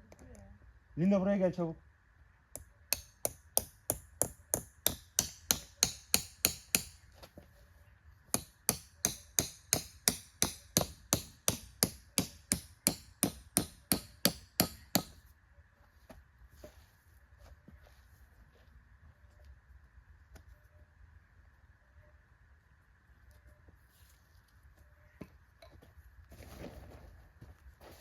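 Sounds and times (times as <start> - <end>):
hammer striking tent stake: 2.6 - 7.0, 8.3 - 15.2.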